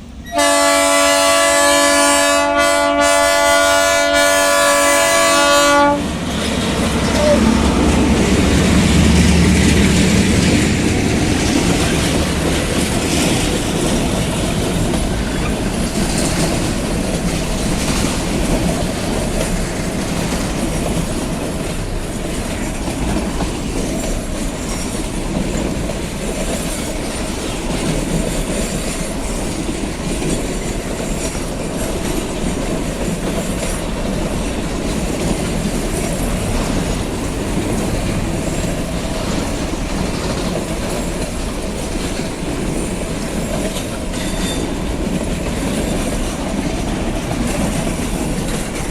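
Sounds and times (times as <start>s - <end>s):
locomotive diesel engine: 6.1s - 16.1s
wagons clattering over rails: 6.2s - 48.9s
wheel squeal: 42.8s - 44.8s.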